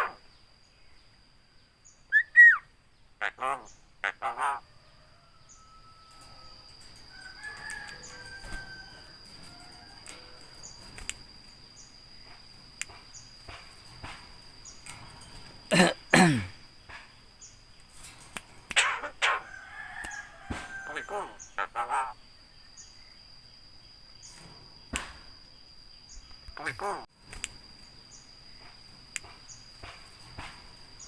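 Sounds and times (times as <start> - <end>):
harsh bird squawks: 0.0 - 0.2, 3.2 - 4.6, 18.7 - 19.5, 20.8 - 22.2, 26.6 - 27.1.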